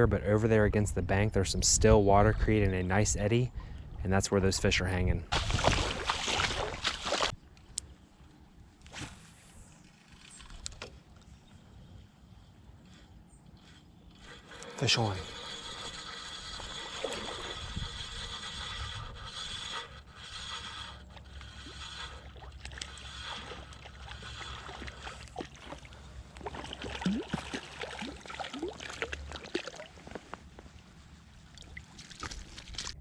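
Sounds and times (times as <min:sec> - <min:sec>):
running creek water: 0:05.3 - 0:07.3, 0:14.2 - 0:33.0
clicks and scrapes: 0:13.4 - 0:25.3
fishing reel gears whirring: 0:13.6 - 0:25.3.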